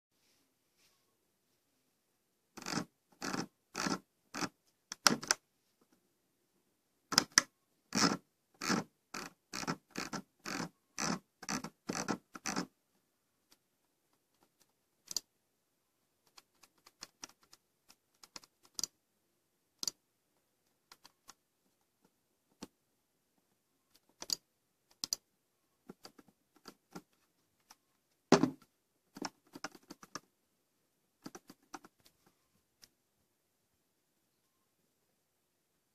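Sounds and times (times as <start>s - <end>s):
mouse clicking: 2.6s - 5.4s, 7.1s - 12.7s, 14.4s - 15.3s, 16.2s - 19.0s, 19.8s - 20.0s, 20.8s - 21.4s, 23.9s - 27.8s.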